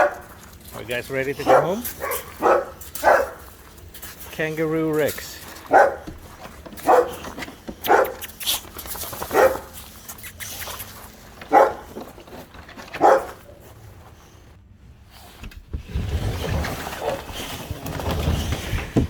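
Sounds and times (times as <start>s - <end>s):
dog barking: 0.0s - 0.3s, 1.4s - 3.4s, 5.6s - 6.1s, 6.8s - 7.2s, 7.8s - 8.2s, 9.3s - 9.7s, 11.5s - 11.9s, 13.0s - 13.5s.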